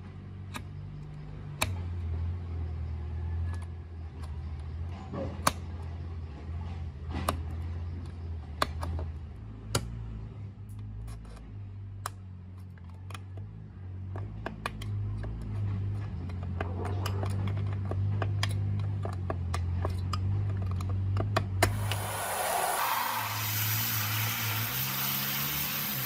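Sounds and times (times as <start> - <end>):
hiss: 21.6 - 26.0.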